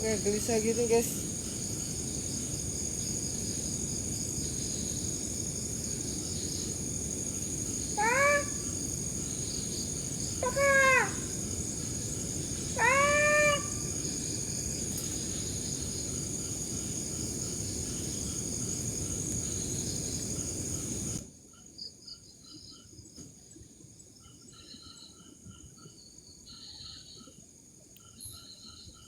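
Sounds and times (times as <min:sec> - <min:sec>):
background hiss: 0:00.0 - 0:28.2
crickets chirping: 0:00.0 - 0:29.0
cat meowing: 0:12.8 - 0:13.7.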